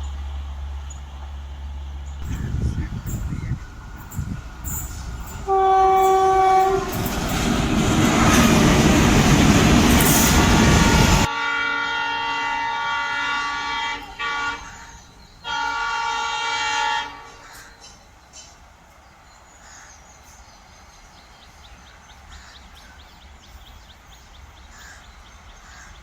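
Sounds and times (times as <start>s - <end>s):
train passing at speed: 0.0s - 26.0s
train horn blasts: 2.2s - 7.5s, 9.8s - 17.6s.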